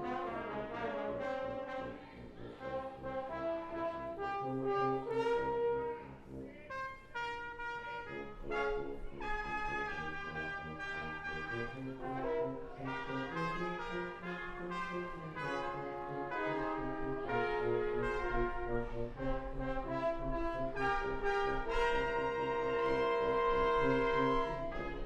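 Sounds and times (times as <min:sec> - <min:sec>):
brass quintet playing: 0:00.0 - 0:25.0
tuba bass line: 0:00.0 - 0:25.0.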